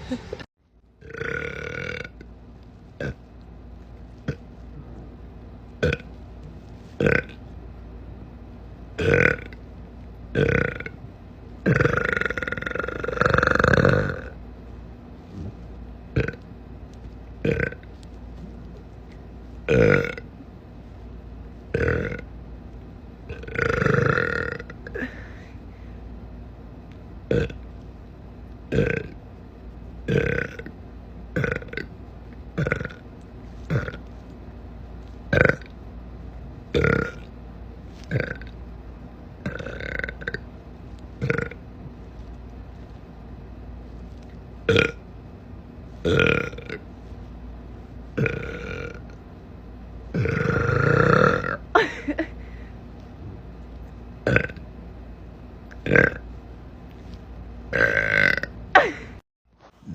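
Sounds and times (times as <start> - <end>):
person burping: 1.0 - 2.3, 3.0 - 3.2, 5.8 - 6.1, 7.0 - 7.4, 9.0 - 9.6, 10.3 - 11.0, 11.6 - 14.4, 16.2 - 16.4, 17.4 - 17.9, 19.7 - 20.2, 21.7 - 22.2, 23.3 - 25.4, 27.3 - 27.6, 28.7 - 29.2, 30.1 - 30.8, 31.4 - 31.9, 32.6 - 33.0, 33.7 - 34.0, 38.1 - 38.5, 39.4 - 40.4, 41.2 - 41.6, 44.7 - 45.0, 46.0 - 46.8, 48.2 - 49.2, 50.1 - 52.4, 54.2 - 54.6, 55.7 - 56.2, 57.7 - 59.2.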